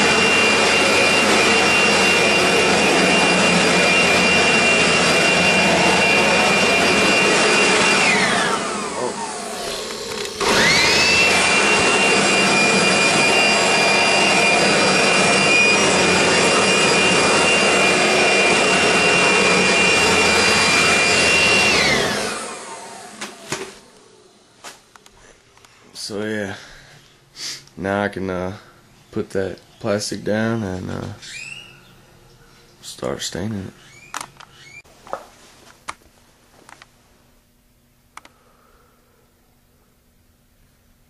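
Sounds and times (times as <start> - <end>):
electric blower whining: 0.0 - 24.4, 30.4 - 31.9.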